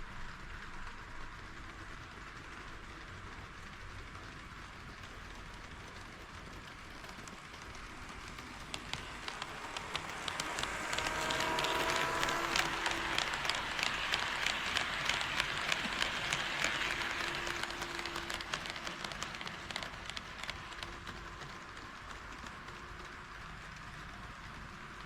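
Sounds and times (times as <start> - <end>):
model train wheels clicking: 0.1 - 25.0
thin motor whine: 8.7 - 18.6.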